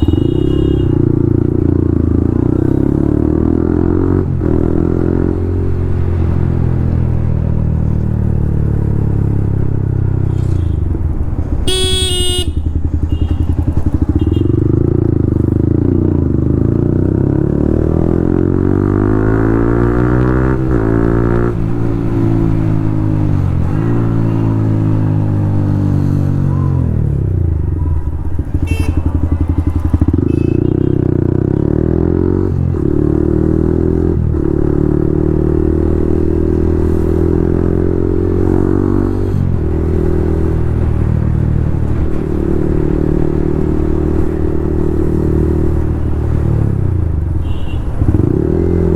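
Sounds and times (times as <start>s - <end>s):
motorcycle engine revving: 0.0s - 48.9s.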